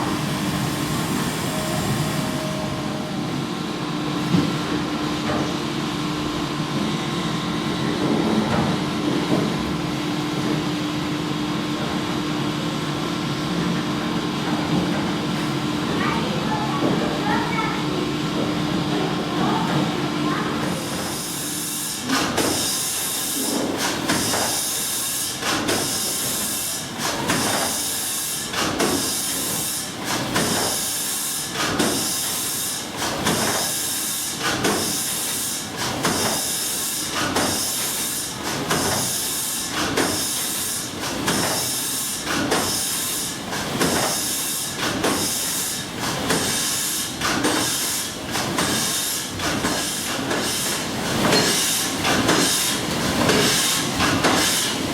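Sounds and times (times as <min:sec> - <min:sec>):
hissing steam: 0:38.9 - 0:54.9.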